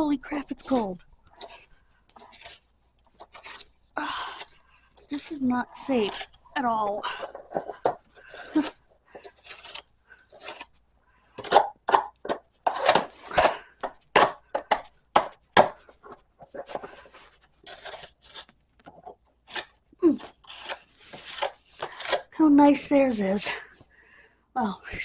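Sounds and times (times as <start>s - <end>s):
ice being scraped and chipped: 0.3s - 7.0s, 8.2s - 10.8s, 11.4s - 15.8s, 16.6s - 18.6s, 19.4s - 22.3s.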